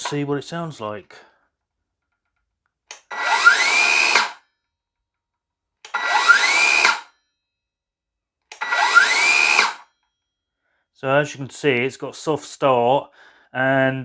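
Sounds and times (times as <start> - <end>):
circular saw motor whine: 3.1 - 4.4, 5.9 - 7.1, 8.6 - 9.8
trigger click: 8.5 - 9.8.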